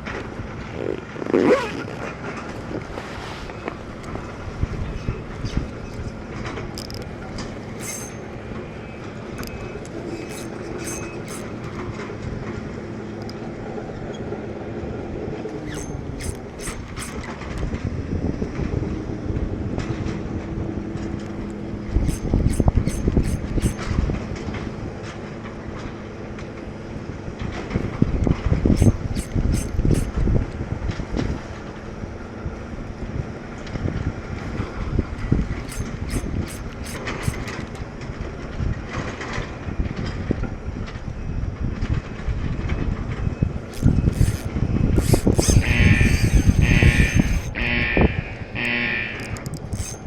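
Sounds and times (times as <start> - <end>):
wind rumble on microphone: 0.0 - 7.8, 14.6 - 25.2, 26.9 - 50.0
fishing reel whirring and clicking: 6.7 - 8.4, 9.3 - 11.8, 15.6 - 17.4, 21.9 - 24.0, 28.6 - 30.2, 35.5 - 37.7, 43.7 - 48.0, 48.6 - 50.0.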